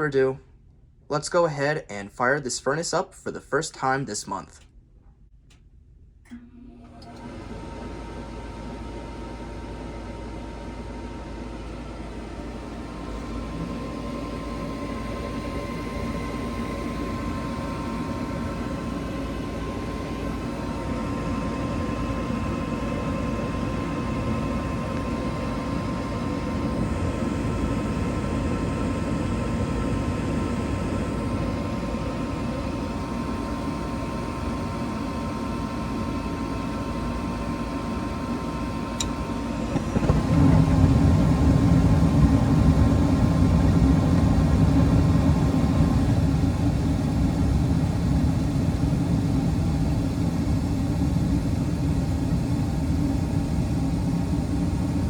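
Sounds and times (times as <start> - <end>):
click: 5.5 - 7.3, 39.0 - 39.2
furnace inducer motor humming: 5.5 - 55.0
gas burners rumbling: 6.2 - 55.0.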